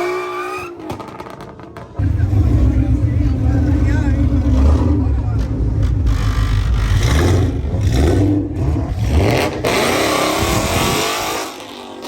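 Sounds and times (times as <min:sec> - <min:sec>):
car engine revving: 0:00.9 - 0:12.0.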